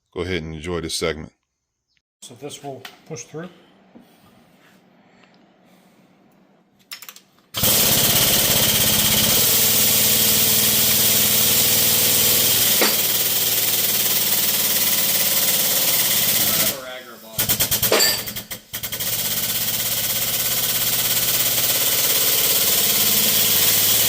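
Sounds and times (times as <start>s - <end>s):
power tool hammering chatter: 7.6s - 24.0s.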